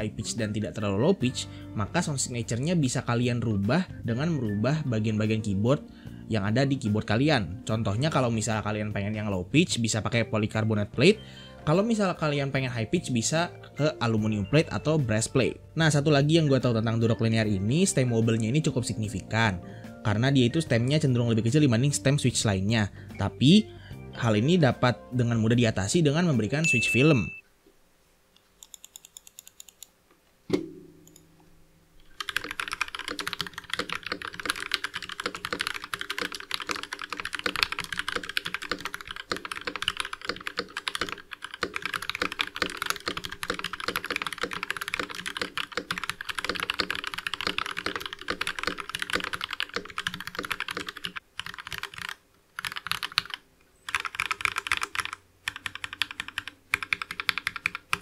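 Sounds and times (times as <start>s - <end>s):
mechanical keyboard typing: 28.6s - 29.9s, 32.1s - 58.0s
thump: 30.5s - 31.0s.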